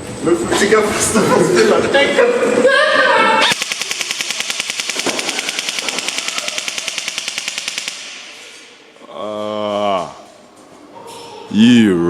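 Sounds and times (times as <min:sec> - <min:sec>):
airsoft gun rapid fire: 0:03.5 - 0:08.8.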